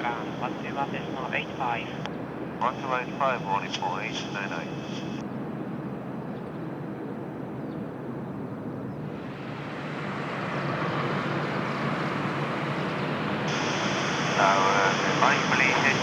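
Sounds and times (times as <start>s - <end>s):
jet engines roaring: 0.0s - 5.2s, 9.0s - 16.0s.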